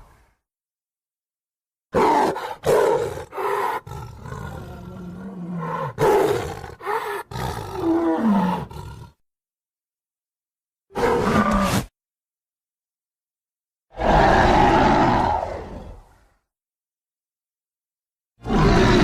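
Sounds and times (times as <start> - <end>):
falling creature cry: 14.0 - 15.9, 18.4 - 19.0.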